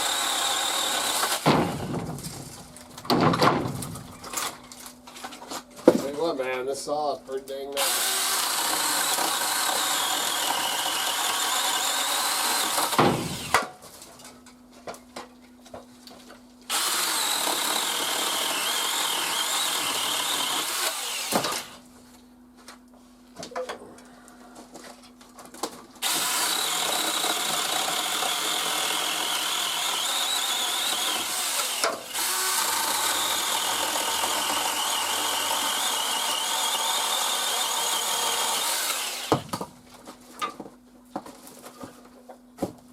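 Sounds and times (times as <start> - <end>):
electric pole saw cutting branches: 0.0 - 1.9, 7.8 - 13.7, 16.7 - 21.8, 26.0 - 39.6.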